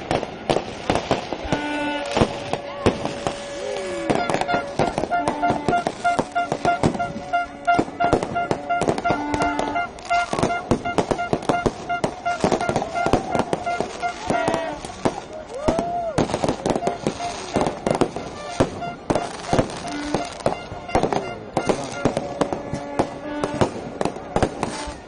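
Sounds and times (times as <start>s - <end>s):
fireworks bangs and crackles: 0.0s - 25.0s
whistling firework shells: 0.1s - 25.0s
pulsing horn-like tone: 1.4s - 15.0s, 16.6s - 25.0s.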